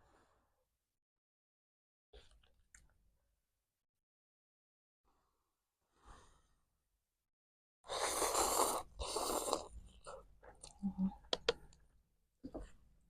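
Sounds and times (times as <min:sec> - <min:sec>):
mouth clicks: 0:10.6 - 0:11.8.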